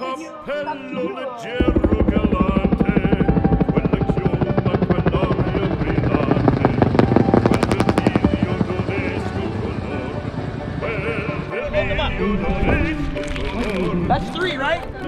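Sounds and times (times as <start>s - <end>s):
helicopter rotor chopping: 1.6s - 15.0s.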